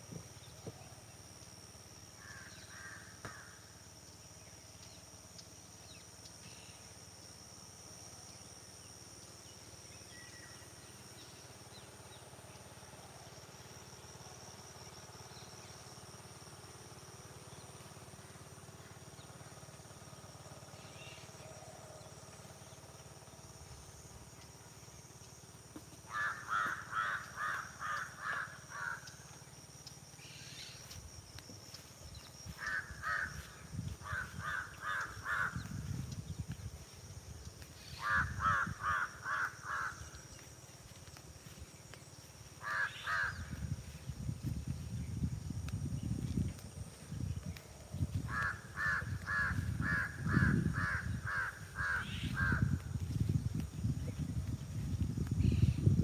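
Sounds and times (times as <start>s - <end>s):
high-pitched insect drone: 0.0s - 56.0s
crows cawing: 2.2s - 3.6s, 26.1s - 29.2s, 32.5s - 36.0s, 37.7s - 40.4s, 42.6s - 43.6s, 48.2s - 52.8s.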